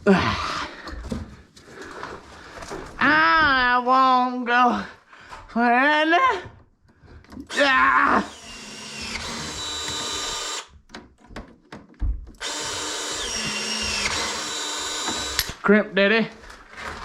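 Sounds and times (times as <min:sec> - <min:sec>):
drill clicks: 0:07.3 - 0:11.8, 0:12.4 - 0:15.6
power drill whining: 0:07.4 - 0:10.8, 0:12.4 - 0:15.6.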